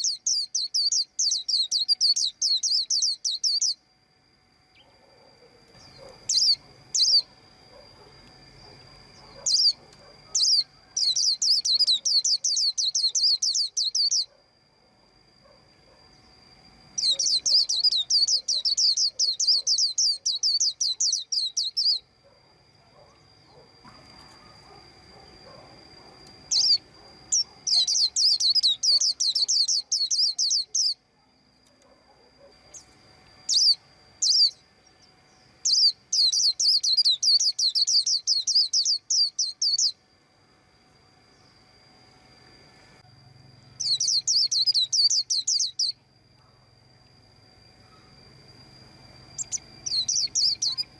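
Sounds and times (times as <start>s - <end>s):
bird chirping: 0.0s - 3.8s, 4.7s - 14.4s, 16.9s - 22.1s, 23.0s - 31.0s, 32.4s - 40.0s, 43.8s - 46.0s, 49.4s - 50.9s
faint steady high tone: 0.0s - 50.9s.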